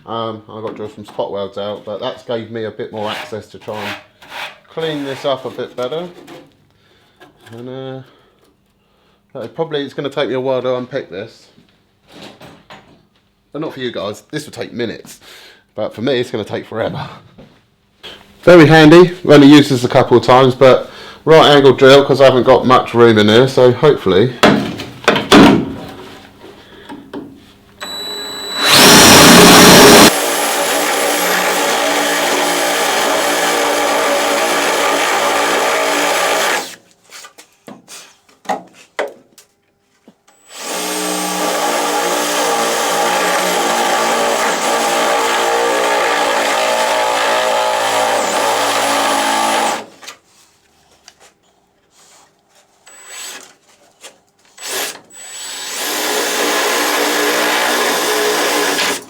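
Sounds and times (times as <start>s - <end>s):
drill drilling sheet steel: 27.8s - 36.8s, 40.4s - 49.9s, 52.8s - 53.4s, 54.6s - 59.0s
drill motor whine: 27.8s - 36.8s, 40.3s - 49.8s, 52.9s - 53.4s.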